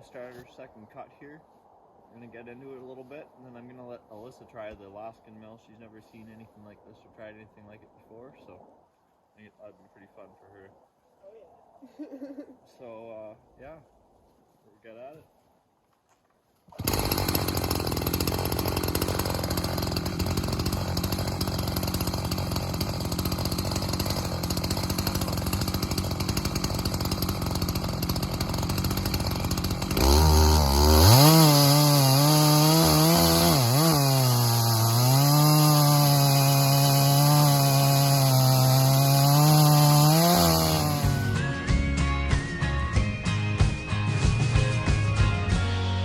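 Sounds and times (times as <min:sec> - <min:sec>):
chainsaw cutting log: 0:16.7 - 0:41.4.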